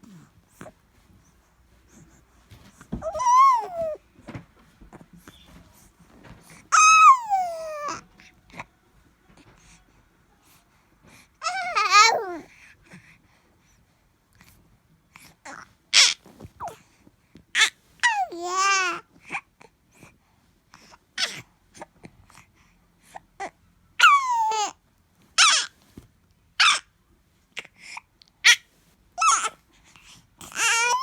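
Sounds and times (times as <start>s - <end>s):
baby squealing and babbling: 3.0s - 4.0s, 6.7s - 8.0s, 11.4s - 12.4s, 15.5s - 16.8s, 17.6s - 19.0s, 24.0s - 24.8s, 25.4s - 25.8s, 26.6s - 26.9s, 29.2s - 29.6s, 30.5s - 31.0s.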